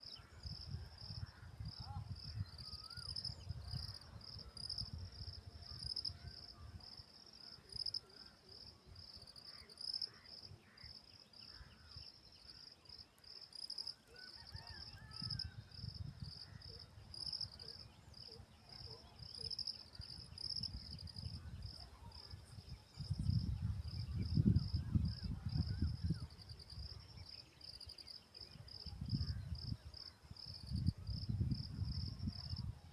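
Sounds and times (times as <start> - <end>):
cricket chirping: 0.0 - 32.8.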